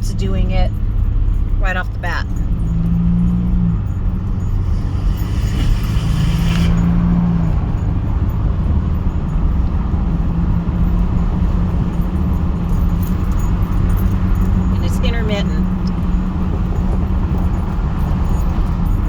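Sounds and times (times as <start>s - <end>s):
road and drivetrain rumble: 0.0s - 19.0s
grinding noise: 4.4s - 7.9s.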